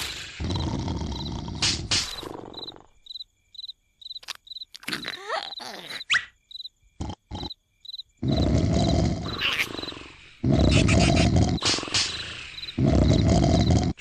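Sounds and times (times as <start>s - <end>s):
cricket chirping: 0.0s - 14.0s
loud snore: 0.4s - 1.8s, 8.2s - 11.7s, 12.7s - 14.0s.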